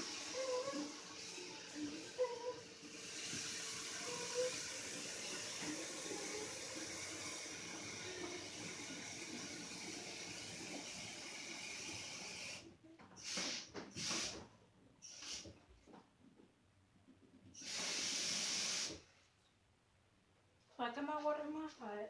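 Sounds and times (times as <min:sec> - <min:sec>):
faucet running into pot: 0:00.0 - 0:14.3.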